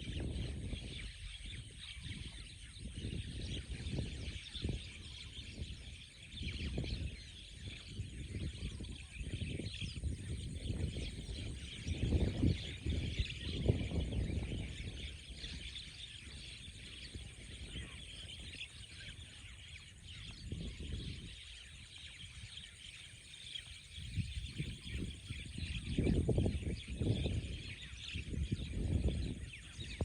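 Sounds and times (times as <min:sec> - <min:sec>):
flock of birds chirping: 0:00.0 - 0:30.0
low gusty rumble: 0:24.0 - 0:30.0.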